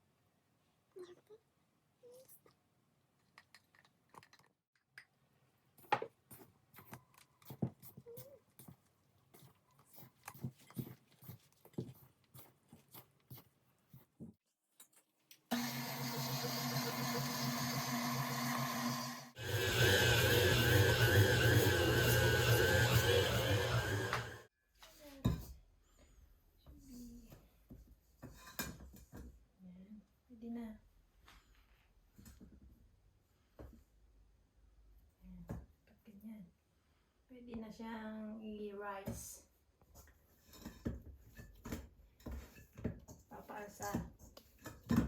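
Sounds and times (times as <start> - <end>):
hands and utensils working dough: 3.3 - 18.6, 19.4 - 24.5, 39.8 - 45.0
faint handling sounds: 5.7 - 15.5
stand mixer motor humming: 15.5 - 24.5.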